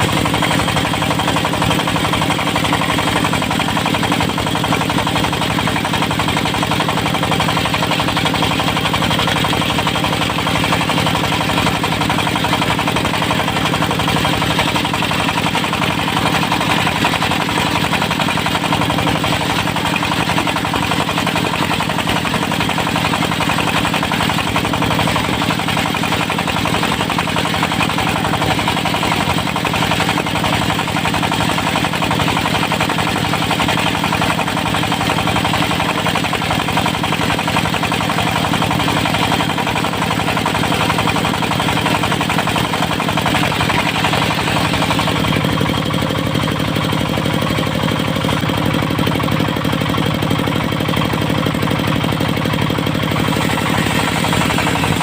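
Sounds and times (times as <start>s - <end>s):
diesel engine running: 0.0s - 55.0s
saw blade ripping log: 53.2s - 55.0s.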